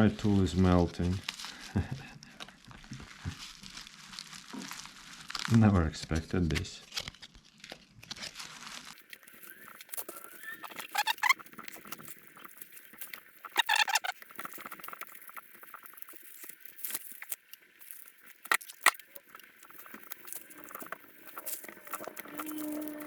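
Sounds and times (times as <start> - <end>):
short squeak: 9.4 - 11.4, 13.6 - 14.1.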